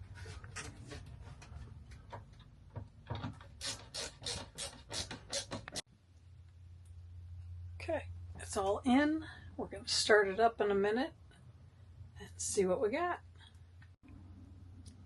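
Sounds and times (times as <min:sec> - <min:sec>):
low steady hum: 0:05.9 - 0:15.0.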